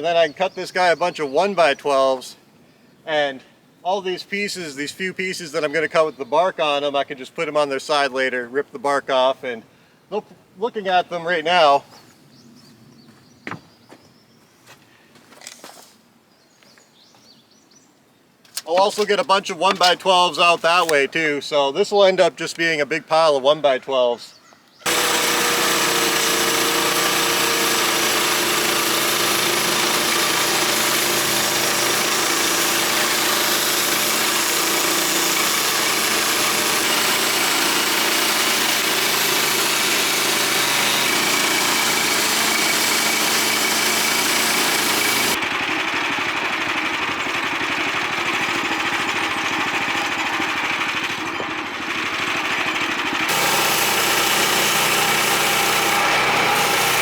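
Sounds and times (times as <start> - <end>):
bandsaw mill cutting log: 18.6 - 21.2, 24.8 - 57.0.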